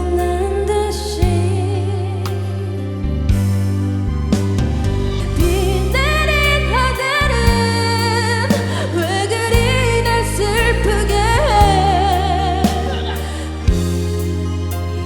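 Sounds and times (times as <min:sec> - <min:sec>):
backing track bass and chords: 0:00.0 - 0:15.0
person singing with vibrato: 0:05.2 - 0:14.2.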